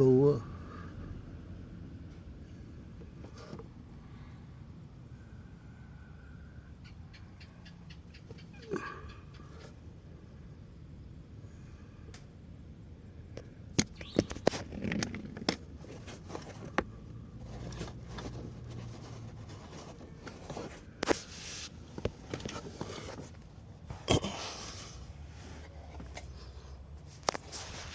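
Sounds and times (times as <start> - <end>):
low steady hum: 0.0 - 27.9
short scrapes: 17.4 - 26.4.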